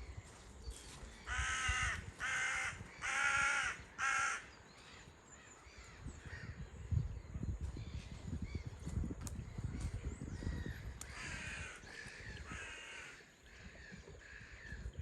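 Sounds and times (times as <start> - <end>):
bird calling: 1.2 - 6.6.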